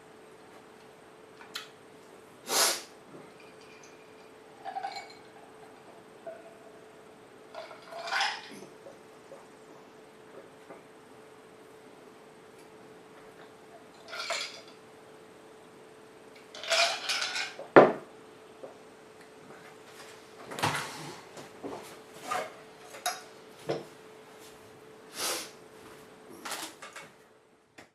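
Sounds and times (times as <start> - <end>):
faint steady hum: 0.0 - 27.9
dishes and utensils clattering: 3.2 - 6.6, 7.5 - 9.0, 13.8 - 14.8, 16.5 - 18.0, 22.2 - 23.9, 26.4 - 27.2.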